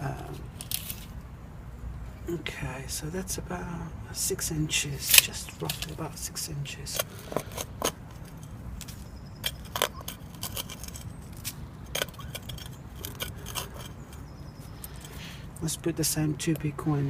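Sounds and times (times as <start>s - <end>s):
digging tool scraping stony soil: 5.0s - 15.4s.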